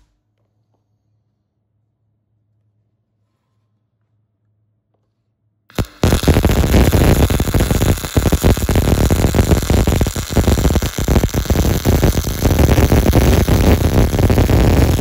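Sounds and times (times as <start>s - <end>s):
welding arc crackling: 5.7s - 15.0s.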